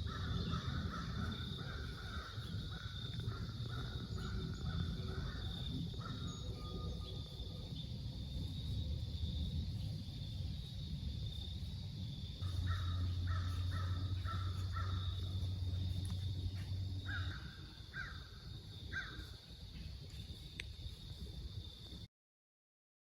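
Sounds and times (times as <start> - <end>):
bird calling: 0.0 - 7.4, 12.4 - 20.0
low steady hum: 0.0 - 22.0
crickets chirping: 0.0 - 22.1.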